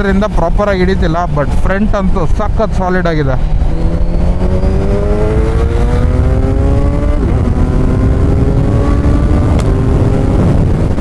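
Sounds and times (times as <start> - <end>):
motorcycle engine accelerating: 3.3 - 11.0.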